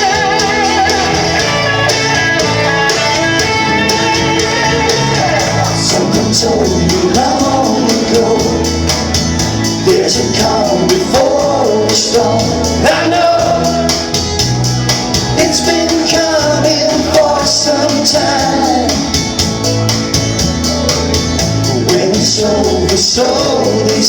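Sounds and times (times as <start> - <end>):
man singing: 0.0 - 2.0, 3.8 - 14.4, 15.3 - 19.6, 21.5 - 24.0
live rock band playing: 0.0 - 24.0.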